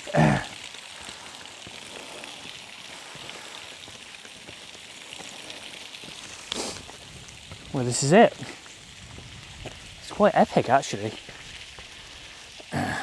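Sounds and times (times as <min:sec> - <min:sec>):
breathy rustle: 0:00.0 - 0:07.3, 0:11.2 - 0:13.0
water drops pattering: 0:00.0 - 0:13.0
steady low hiss: 0:05.0 - 0:13.0.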